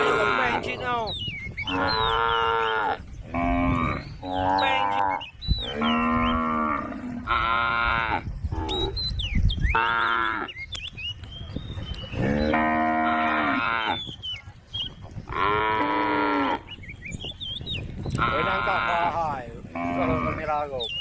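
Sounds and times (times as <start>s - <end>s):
cattle mooing: 0.0s - 0.8s, 1.6s - 9.0s, 12.2s - 14.0s, 15.3s - 16.7s, 18.2s - 20.6s.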